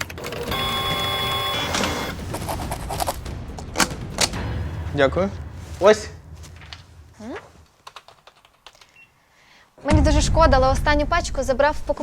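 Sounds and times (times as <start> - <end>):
sharp clicks and taps: 7.8 - 9.0.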